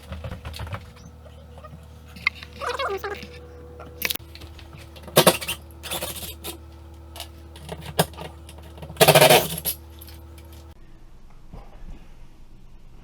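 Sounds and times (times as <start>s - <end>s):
steady low hum: 0.0s - 11.3s
metal clinks: 4.0s - 6.6s, 7.2s - 10.7s
small metal pieces clattering: 4.0s - 6.6s, 7.2s - 10.7s.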